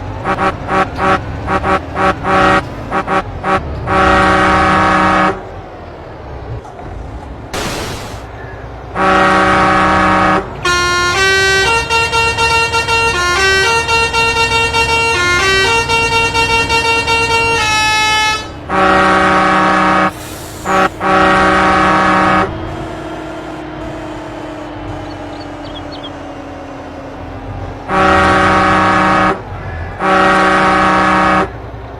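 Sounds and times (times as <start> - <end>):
truck engine tone: 0.0 - 31.9
musical air horn on a truck: 9.0 - 22.6, 27.9 - 29.4, 30.0 - 31.5.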